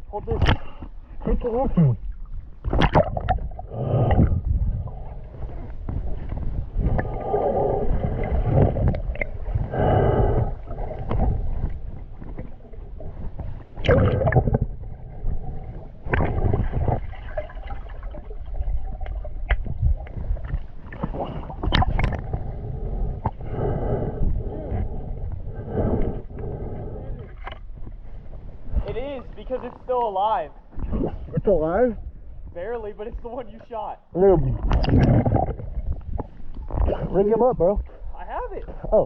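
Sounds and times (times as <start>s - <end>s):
water gurgling and splashing: 2.6s - 27.7s, 34.5s - 37.9s
swimmer breathing hard: 3.6s - 12.0s, 22.2s - 27.5s.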